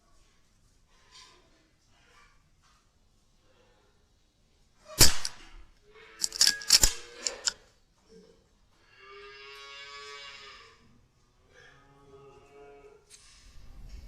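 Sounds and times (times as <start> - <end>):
metallic clicks: 6.2 - 7.6.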